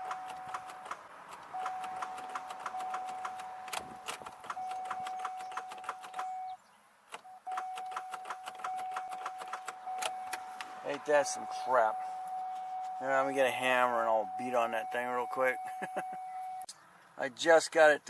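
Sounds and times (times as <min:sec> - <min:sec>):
car starter clicking rapidly: 0:00.0 - 0:06.4, 0:07.5 - 0:10.4.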